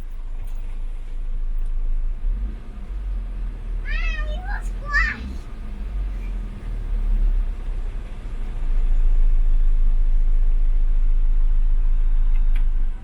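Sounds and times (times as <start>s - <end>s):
car engine idling: 0.0s - 10.2s.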